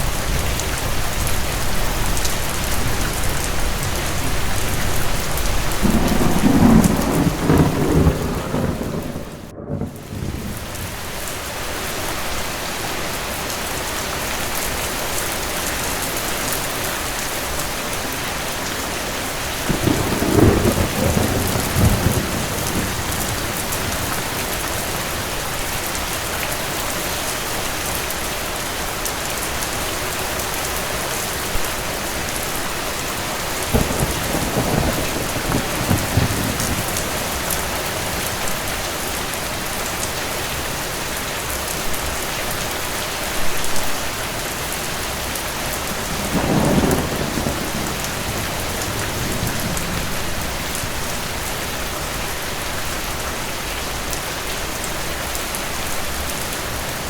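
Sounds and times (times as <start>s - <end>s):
distant thunder rumbling: 0.0s - 11.3s, 19.2s - 26.1s, 33.6s - 38.8s, 45.6s - 51.6s
heavy rain hissing: 0.0s - 57.0s.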